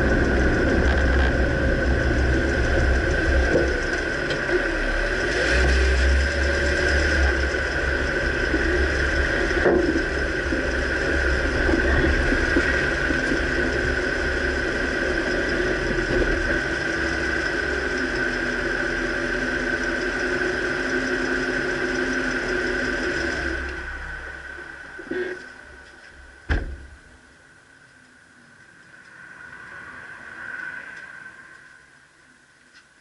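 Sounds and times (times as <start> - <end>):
pickup engine drone: 0.0 - 27.4.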